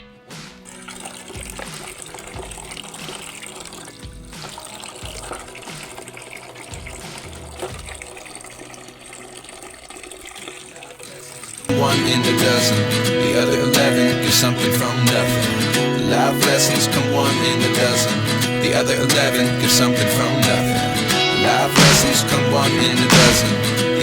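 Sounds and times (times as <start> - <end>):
faint music: 0.0 - 24.0
water running from a tap: 0.6 - 11.8.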